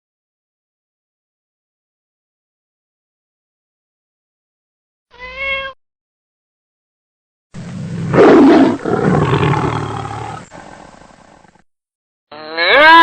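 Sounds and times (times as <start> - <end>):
large animal roaring: 7.8 - 11.5.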